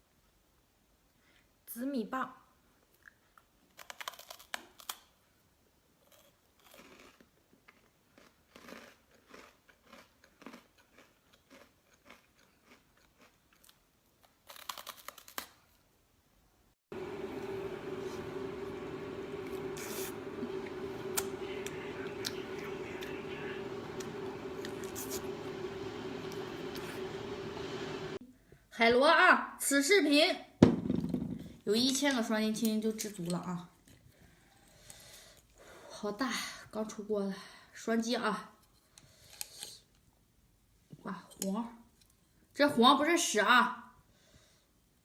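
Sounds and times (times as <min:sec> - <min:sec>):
crunchy food chewing: 0:03.0 - 0:05.1, 0:06.0 - 0:15.8
steady hum: 0:16.9 - 0:28.2.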